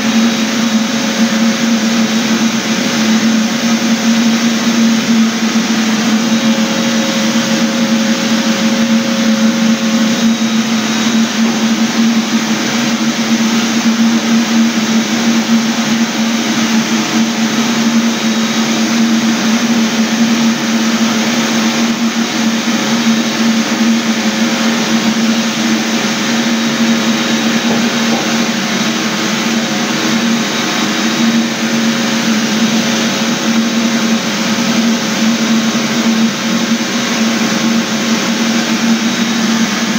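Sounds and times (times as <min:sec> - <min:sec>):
floor sanding machine running: 0:00.0 - 0:39.9.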